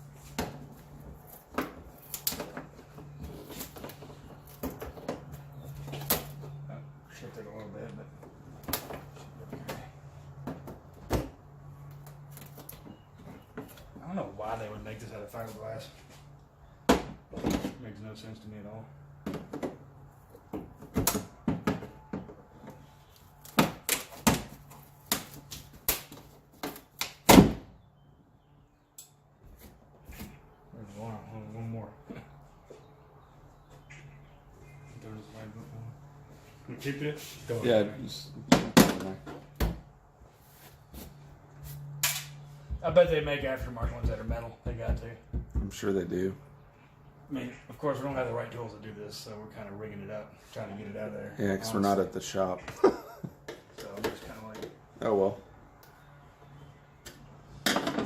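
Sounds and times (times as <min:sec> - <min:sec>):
hand tools knocking and tapping: 0:42.7 - 0:45.8.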